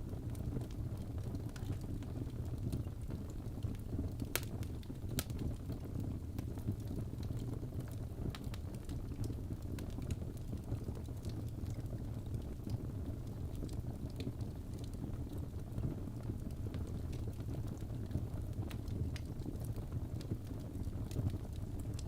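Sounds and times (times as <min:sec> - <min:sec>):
fire crackling and popping: 0:00.0 - 0:22.0
fire rumbling: 0:00.0 - 0:22.0.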